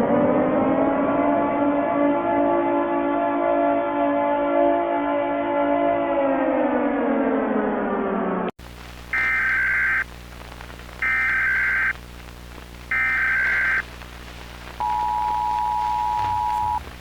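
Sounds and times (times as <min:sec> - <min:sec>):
digital header data bursts: 0:09.1 - 0:10.1, 0:11.0 - 0:12.1, 0:12.8 - 0:17.0
steady two-tone attention signal: 0:12.9 - 0:13.8, 0:14.8 - 0:16.8.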